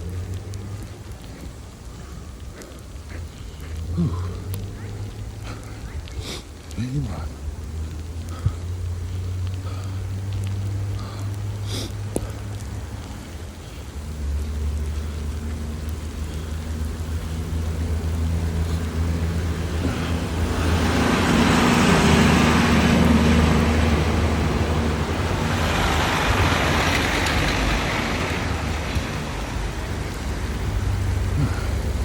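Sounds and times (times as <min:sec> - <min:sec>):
road traffic rumble: 0:00.0 - 0:32.0
vehicle passing: 0:06.6 - 0:32.0.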